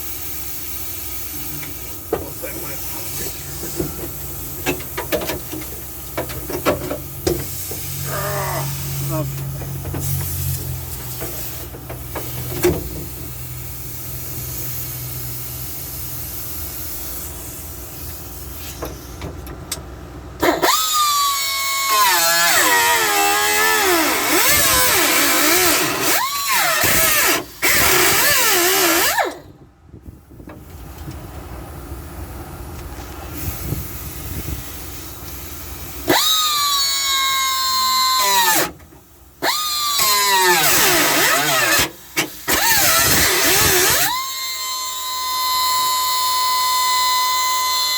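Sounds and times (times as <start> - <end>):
power tool cutting sheet metal: 20.4 - 29.5, 36.0 - 38.8, 39.4 - 47.9.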